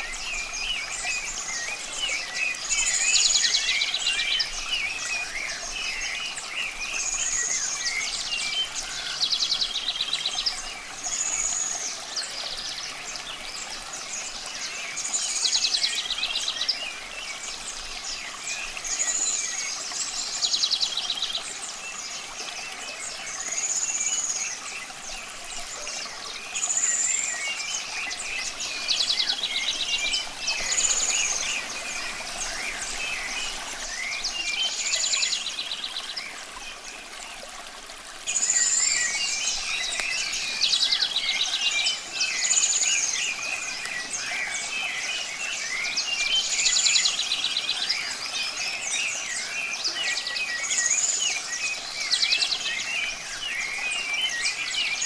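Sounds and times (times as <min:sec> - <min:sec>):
birds singing: 0:00.0 - 0:55.0
faint running water: 0:00.0 - 0:55.0.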